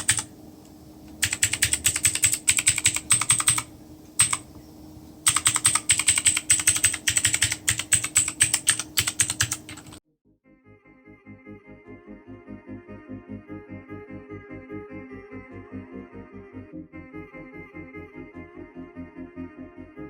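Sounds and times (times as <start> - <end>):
mechanical keyboard typing: 0.0 - 0.4, 1.1 - 4.6, 5.2 - 10.0
faint steady hum: 0.0 - 10.0
music: 10.1 - 20.0.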